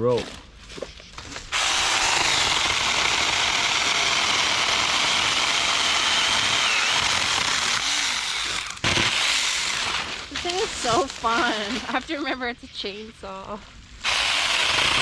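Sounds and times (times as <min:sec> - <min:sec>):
mini chainsaw cutting branches: 0:01.2 - 0:11.9, 0:14.0 - 0:15.0.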